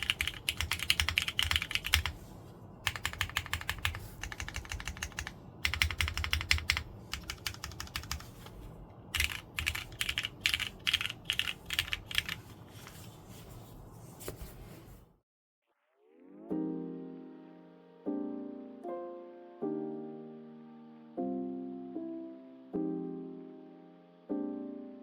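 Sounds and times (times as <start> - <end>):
mechanical keyboard typing: 0.0 - 2.2, 2.8 - 12.5
soft piano music: 16.4 - 25.0.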